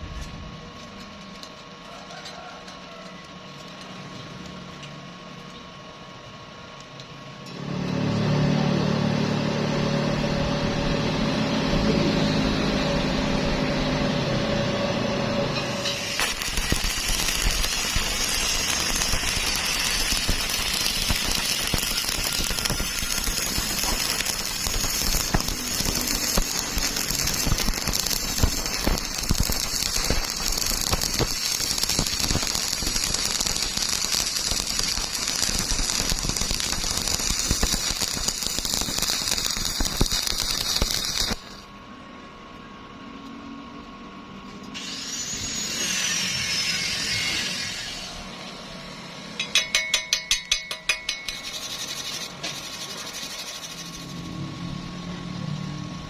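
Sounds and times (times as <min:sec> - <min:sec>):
welding arc crackling: 0:15.4 - 0:41.7, 0:44.8 - 0:48.4, 0:49.4 - 0:55.2.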